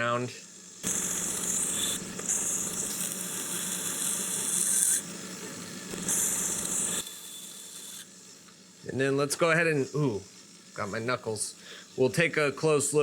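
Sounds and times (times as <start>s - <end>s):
belt sander motor humming: 0.8s - 8.2s
knife grinding on belt sander: 0.8s - 8.2s.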